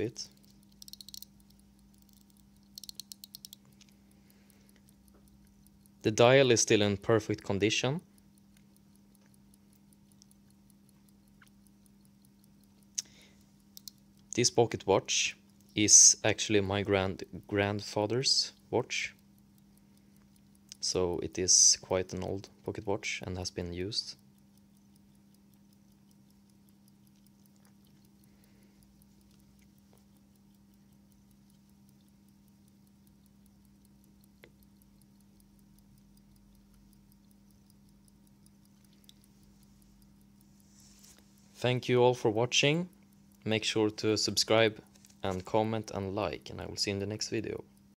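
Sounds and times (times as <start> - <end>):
pocket watch ticking: 0.0 - 47.9
steady low hum: 0.0 - 47.9
sharp click: 0.2 - 6.0.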